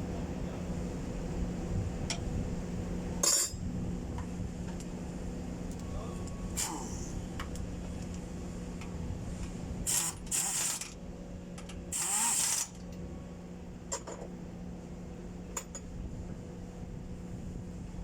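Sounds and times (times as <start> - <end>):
steady low hum: 0.0 - 18.0
short hissing bursts: 6.6 - 7.1, 9.9 - 10.8, 11.9 - 12.7.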